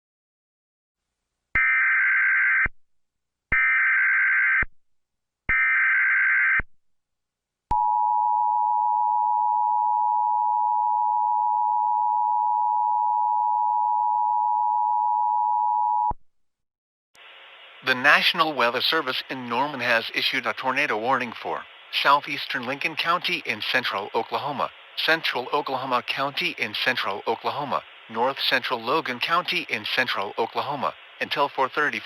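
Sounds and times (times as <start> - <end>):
buzzy data bursts: 17.8 - 32.0.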